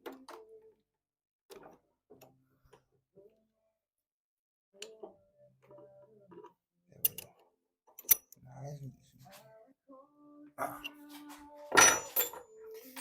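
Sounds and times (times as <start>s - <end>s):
metal parts clicking and knocking: 6.4s - 7.4s, 8.0s - 8.4s, 11.8s - 12.4s.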